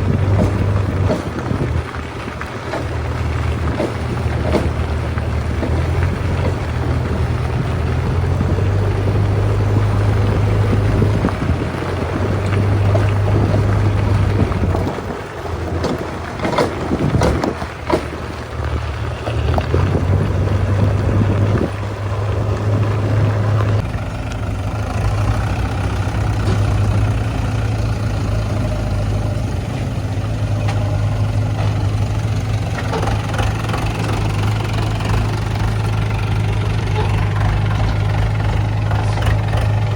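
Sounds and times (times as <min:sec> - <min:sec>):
heavy diesel engines droning: 0:00.0 - 0:39.9
sharp knocks: 0:00.1 - 0:01.8, 0:02.6 - 0:07.0, 0:15.8 - 0:18.3.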